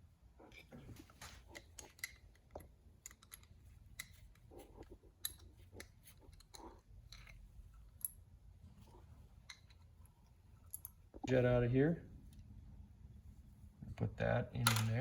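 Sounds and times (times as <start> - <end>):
screwdriver and metal parts clicking: 1.3 - 7.4.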